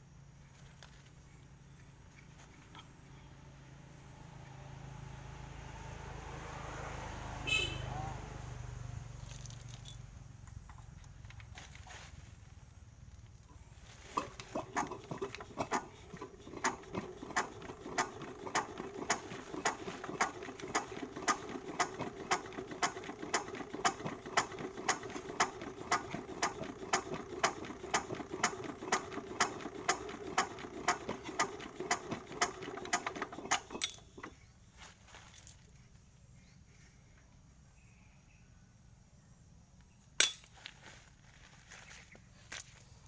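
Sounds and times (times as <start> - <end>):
machine hum: 14.1 - 34.4
small machine clacking: 14.2 - 34.4.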